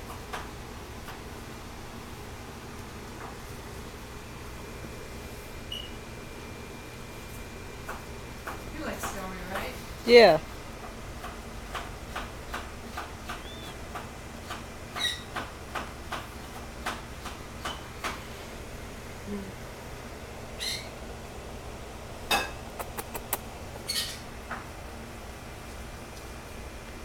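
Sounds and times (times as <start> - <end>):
kitten mewing: 22.7 - 23.4.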